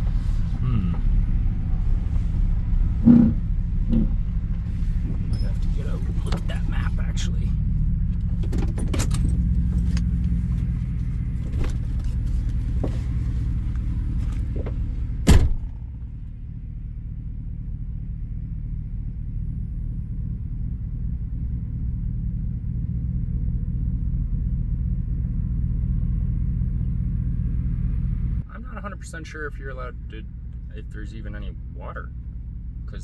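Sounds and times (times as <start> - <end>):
truck door shutting: 0.0 - 16.2
truck engine idling: 0.0 - 33.0.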